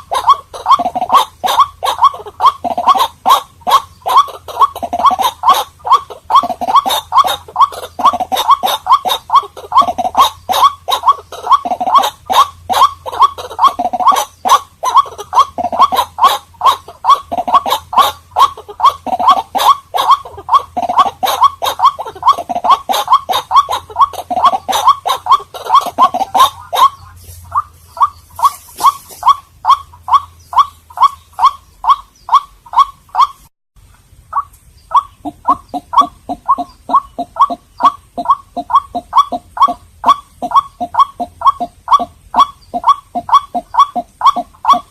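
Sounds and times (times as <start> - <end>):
waterhen calling: 0.0 - 44.9.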